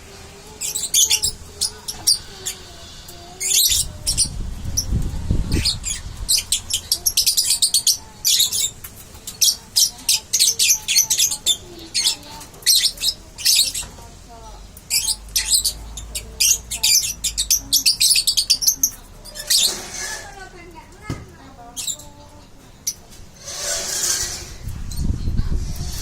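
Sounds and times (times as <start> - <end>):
young bird chirping: 3.4 - 13.9, 14.8 - 20.4.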